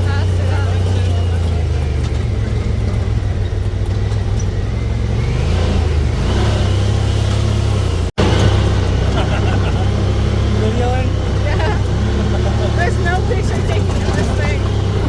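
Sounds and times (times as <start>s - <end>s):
atv engine running: 0.0s - 15.0s.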